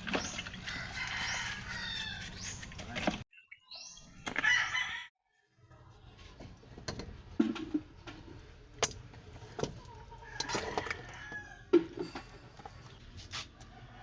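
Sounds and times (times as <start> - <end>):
chickens clucking: 9.5 - 11.2.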